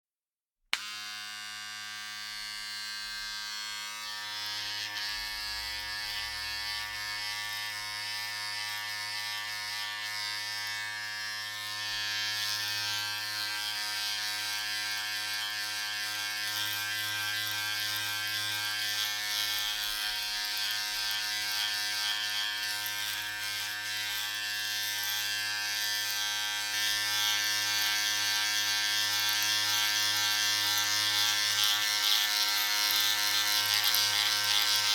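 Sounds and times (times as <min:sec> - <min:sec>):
electric razor buzzing: 0:00.8 - 0:34.9.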